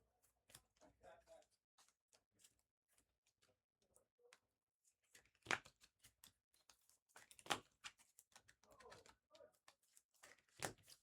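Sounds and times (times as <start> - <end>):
cards rustling and clicking: 5.1 - 11.0.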